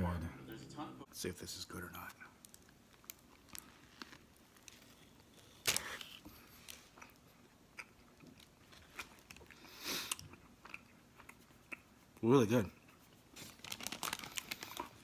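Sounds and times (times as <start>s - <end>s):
crunch of toasted bread: 2.4s - 11.4s
chewing clicks and crackles: 2.4s - 13.0s.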